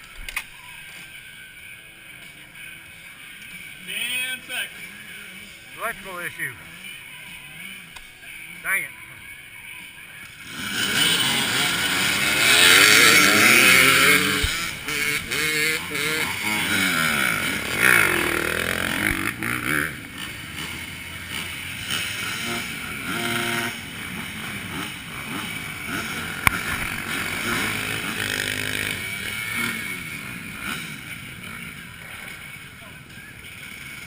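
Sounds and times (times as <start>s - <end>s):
dirt bike engines revving: 10.2s - 34.0s.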